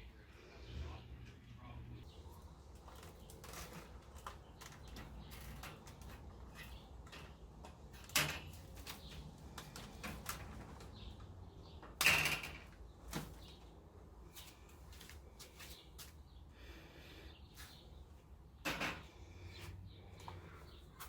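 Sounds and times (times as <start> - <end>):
objects knocking and scraping: 2.8 - 11.1, 18.6 - 19.2.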